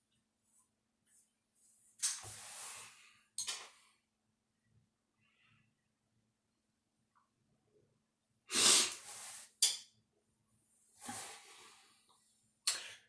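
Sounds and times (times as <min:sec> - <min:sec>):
hissy bursts of breath: 0:08.5 - 0:09.5.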